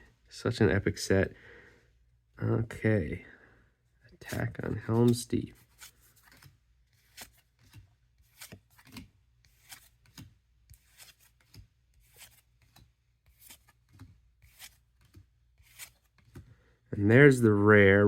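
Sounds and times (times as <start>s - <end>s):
trading cards being flipped: 4.3s - 16.5s.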